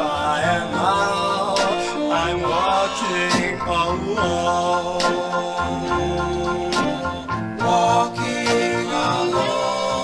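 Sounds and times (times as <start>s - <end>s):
held pop music chords: 0.0s - 10.0s.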